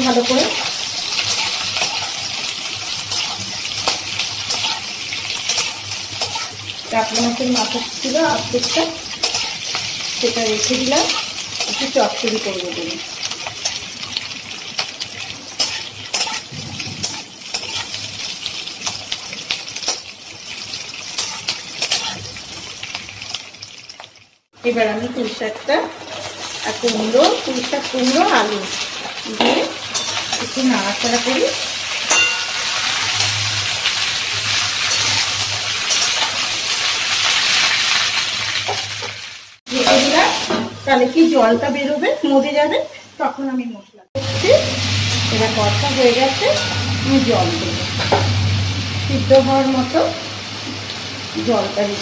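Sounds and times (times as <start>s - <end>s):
food sizzling in hot oil: 0.0s - 52.0s
metal spatula scraping a pan: 0.2s - 12.1s, 14.8s - 18.1s, 21.1s - 22.3s, 26.0s - 38.0s.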